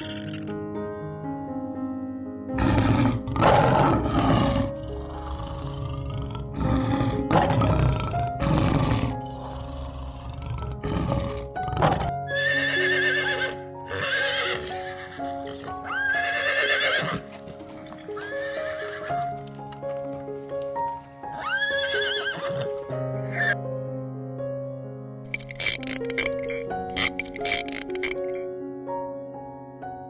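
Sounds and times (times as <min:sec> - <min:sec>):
high wavering animal cries: 0:00.0 - 0:00.4, 0:11.8 - 0:14.7, 0:15.5 - 0:17.2
slow sustained background music: 0:00.0 - 0:30.0.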